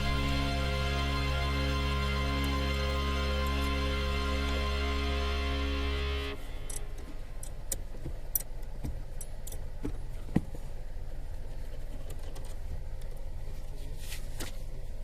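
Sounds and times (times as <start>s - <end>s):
car engine idling: 0.0s - 11.6s.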